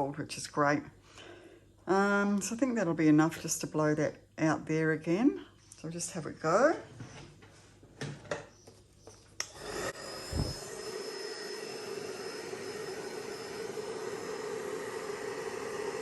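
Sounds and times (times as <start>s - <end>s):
hairdryer running with high whine: 9.4s - 16.0s.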